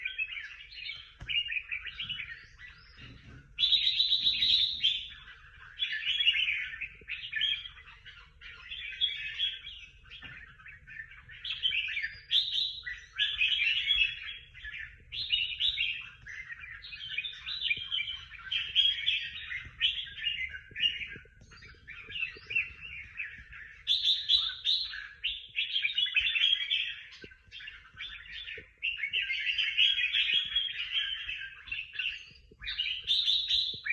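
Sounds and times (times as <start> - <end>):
songbird singing: 0.0 - 33.9.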